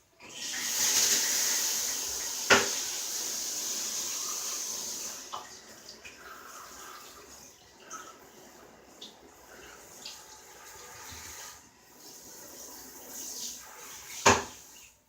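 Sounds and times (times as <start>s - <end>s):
bathtub tap running water: 0.0s - 15.0s.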